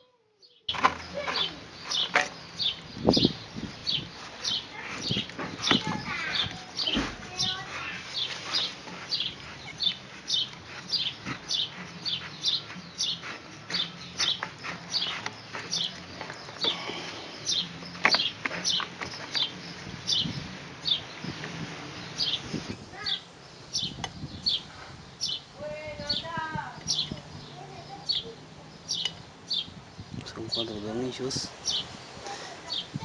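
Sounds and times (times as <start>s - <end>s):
bird chirping: 0.4s - 33.0s.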